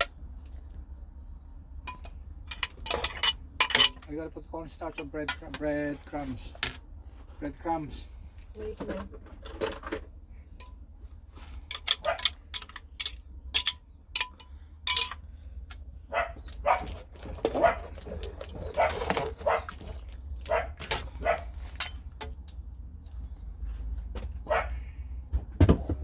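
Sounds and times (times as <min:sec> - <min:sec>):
dog barking: 0:12.0 - 0:12.3, 0:16.1 - 0:18.0, 0:18.6 - 0:19.8, 0:20.5 - 0:21.6, 0:24.4 - 0:24.8.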